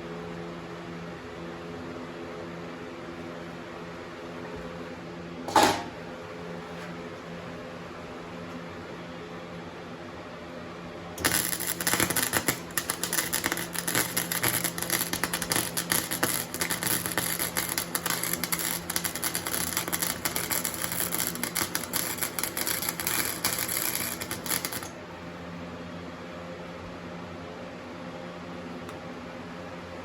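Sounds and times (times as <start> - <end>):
welder cooling fan hum: 0.0 - 30.0
arc welding crackle: 11.2 - 25.0.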